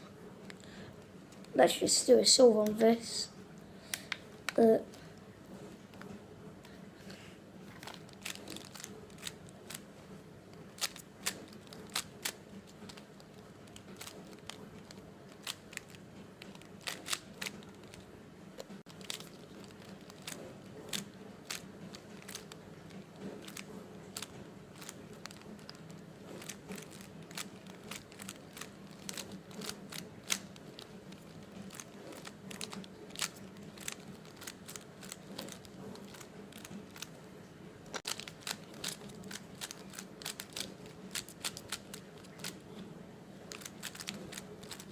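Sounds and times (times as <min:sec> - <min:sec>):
faint steady hum: 0:00.0 - 0:44.9
plastic puzzle cube clicking: 0:07.8 - 0:09.8, 0:10.8 - 0:18.0, 0:18.9 - 0:37.2, 0:38.0 - 0:42.6, 0:43.5 - 0:44.9.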